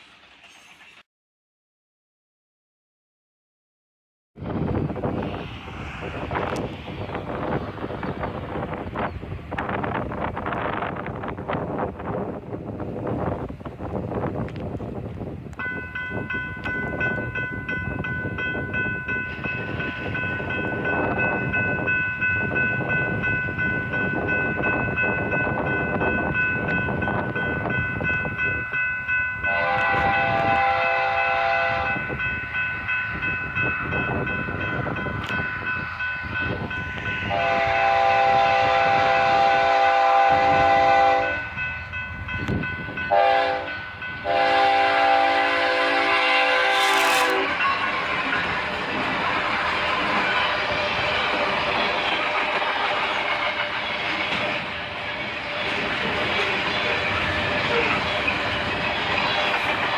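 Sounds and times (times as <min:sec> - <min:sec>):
low rumble of locomotive engines: 0:04.4 - 0:59.9
train horn blasts: 0:29.4 - 0:32.1, 0:37.2 - 0:41.6, 0:43.1 - 0:48.2.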